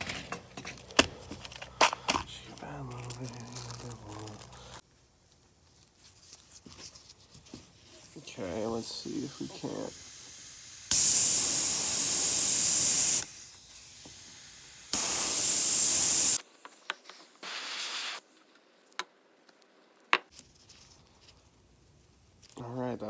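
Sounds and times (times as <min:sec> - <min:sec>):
airbrush spraying paint: 0:07.5 - 0:18.4.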